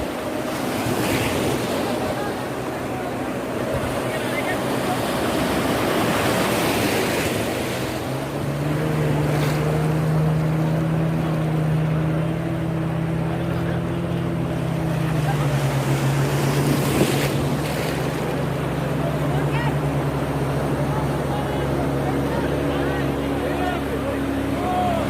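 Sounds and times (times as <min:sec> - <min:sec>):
motorboat engine running: 0:00.0 - 0:25.0
sea water rushing: 0:00.0 - 0:25.0.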